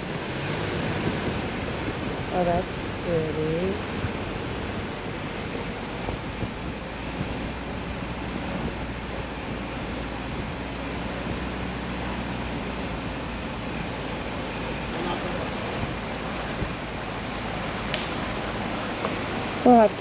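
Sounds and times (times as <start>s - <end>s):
low rumble: 0.0s - 20.0s
road and wind noise: 0.0s - 20.0s.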